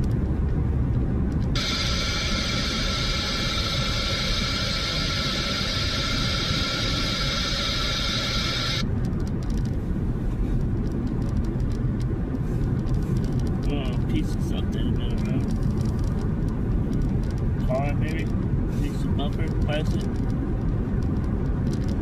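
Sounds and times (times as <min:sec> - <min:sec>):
car road noise rumble: 0:00.0 - 0:22.0
high hiss: 0:01.6 - 0:08.8.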